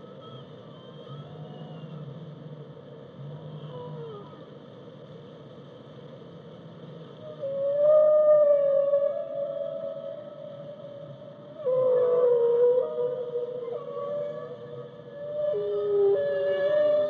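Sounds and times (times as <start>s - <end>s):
whale calls: 0.1s - 2.2s, 3.4s - 4.6s, 7.2s - 17.0s.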